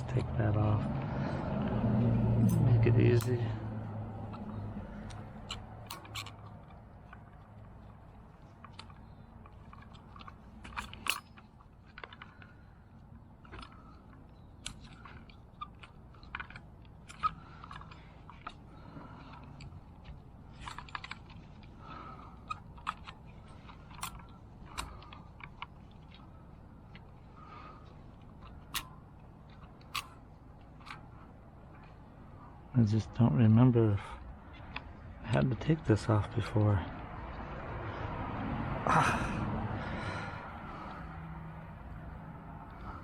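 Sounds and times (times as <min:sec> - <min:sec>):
plastic and metal parts clicking: 0:04.3 - 0:32.0.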